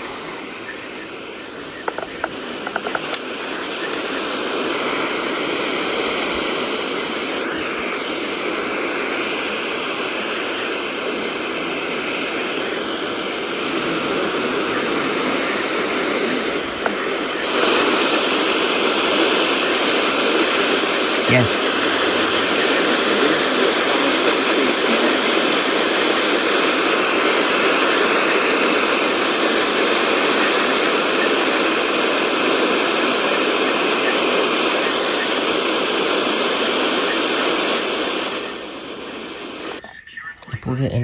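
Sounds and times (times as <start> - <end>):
radio static hiss: 0.0 - 41.0
clicks: 0.6 - 4.1, 16.6 - 17.1.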